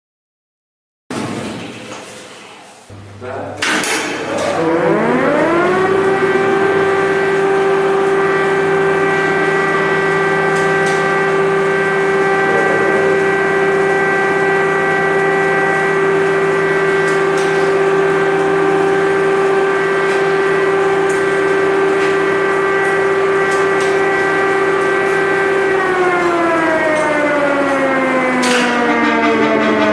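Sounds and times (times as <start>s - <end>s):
air-raid siren wailing: 4.3s - 29.9s.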